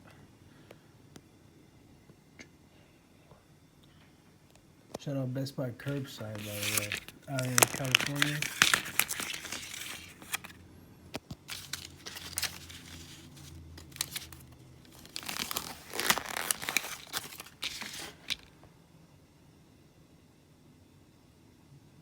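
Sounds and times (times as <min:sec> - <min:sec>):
packaging crinkling and tearing: 0:05.8 - 0:10.6, 0:11.3 - 0:18.5.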